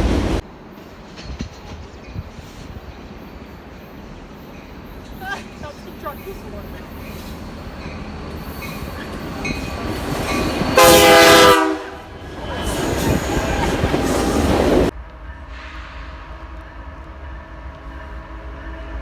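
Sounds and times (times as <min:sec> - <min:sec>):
train rumbling past: 0:00.0 - 0:19.0
train horn chord: 0:10.7 - 0:12.1.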